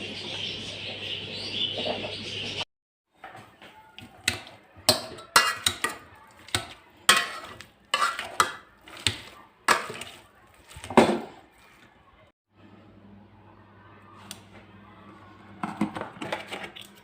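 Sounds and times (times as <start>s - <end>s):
dishes and utensils clinking: 3.2s - 11.4s.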